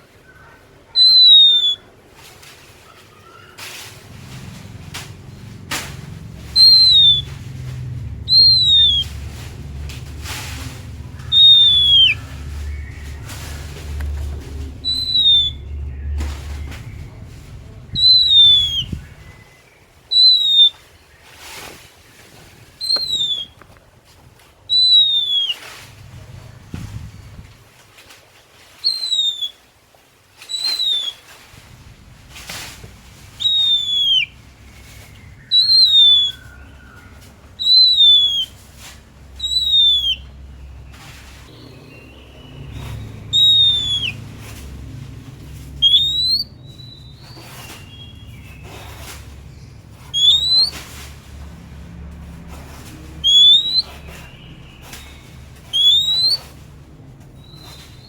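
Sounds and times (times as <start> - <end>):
soft warbled bird notes: 0.3 - 1.9, 3.2 - 21.4, 22.8 - 23.6, 24.7 - 27.4, 28.8 - 29.6, 30.5 - 31.6, 32.7 - 51.2, 53.0 - 58.0
bird whistling song: 0.9 - 1.9, 6.3 - 21.1, 22.8 - 23.6, 24.7 - 25.8, 28.8 - 29.6, 30.4 - 31.3, 33.4 - 38.6, 39.3 - 44.3, 45.7 - 51.0, 53.1 - 56.6, 57.4 - 58.0.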